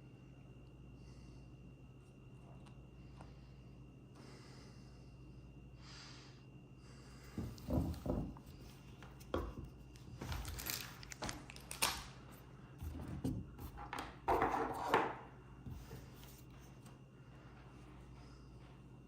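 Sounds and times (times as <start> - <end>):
faint low hum: 0.0 - 19.0
handling knocks and rustles: 7.4 - 15.1.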